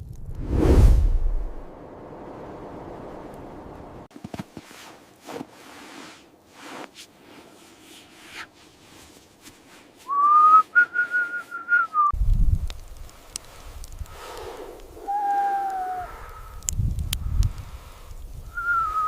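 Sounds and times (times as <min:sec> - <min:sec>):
low rumble: 0:00.0 - 0:04.1
faint soft swishes: 0:00.4 - 0:01.7
high steady whistle: 0:10.1 - 0:12.1, 0:18.5 - 0:19.0.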